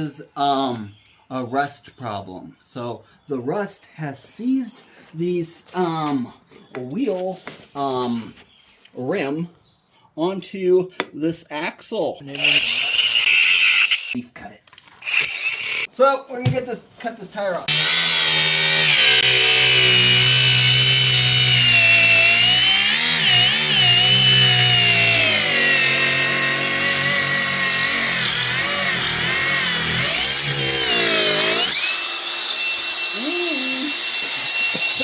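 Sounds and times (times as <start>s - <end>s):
angle grinder cutting tire: 12.3s - 14.2s, 15.0s - 15.9s, 17.7s - 35.0s.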